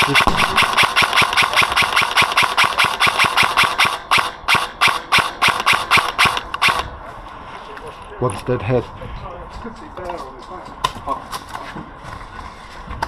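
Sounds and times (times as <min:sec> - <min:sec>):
airsoft gun rapid firing: 0:00.0 - 0:06.9.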